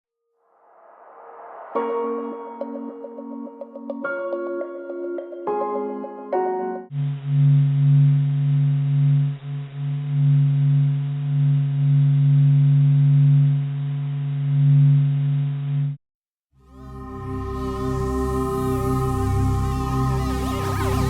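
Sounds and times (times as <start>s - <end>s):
low electronic drone: 16.6s - 21.0s.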